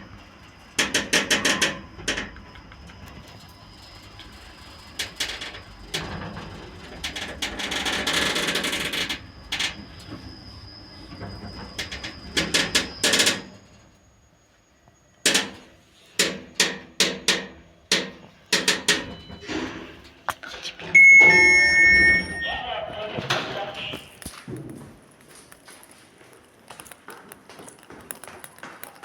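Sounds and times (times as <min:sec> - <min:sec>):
lift creaking loudly: 0:18.3 - 0:23.9.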